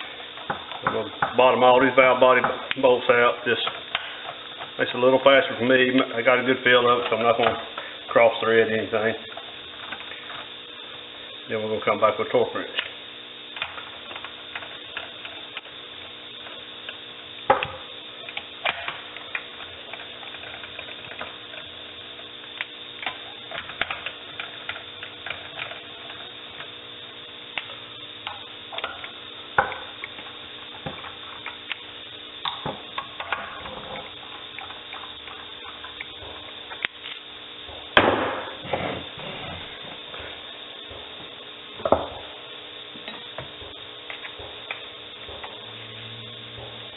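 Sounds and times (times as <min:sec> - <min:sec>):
steady hum: 0:00.0 - 0:46.9.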